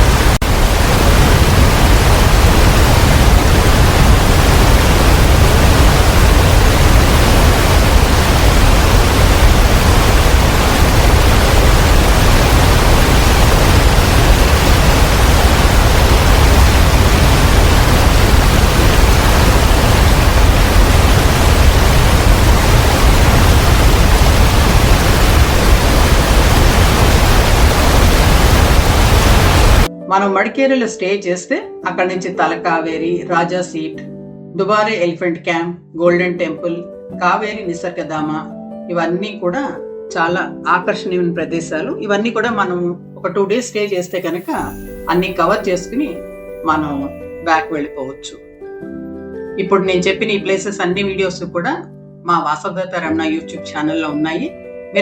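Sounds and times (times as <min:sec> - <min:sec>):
waterfall rushing: 0:00.0 - 0:29.9.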